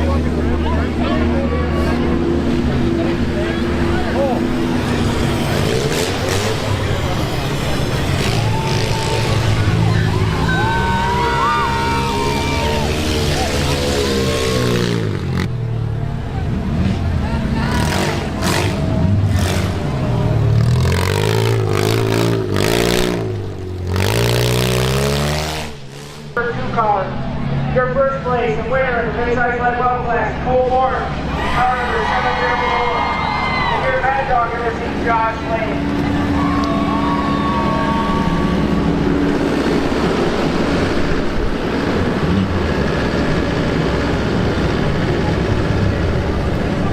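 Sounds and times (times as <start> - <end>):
car engine revving unevenly: 0.0 - 28.4, 33.8 - 46.9.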